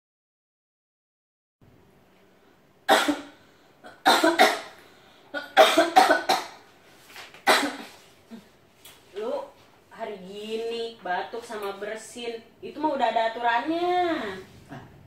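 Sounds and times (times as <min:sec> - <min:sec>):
person coughing: 0:02.9 - 0:06.6, 0:07.4 - 0:08.6.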